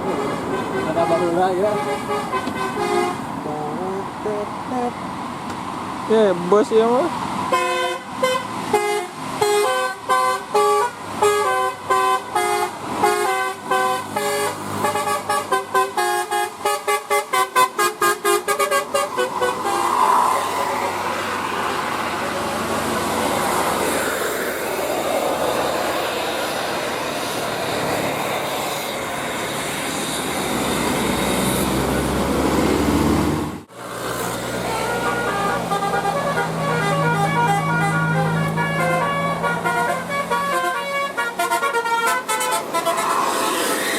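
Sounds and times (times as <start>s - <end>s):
bus multi-tone horn: 0.0s - 3.3s, 7.5s - 20.1s, 34.2s - 43.7s
vehicle noise rushing: 0.0s - 43.9s.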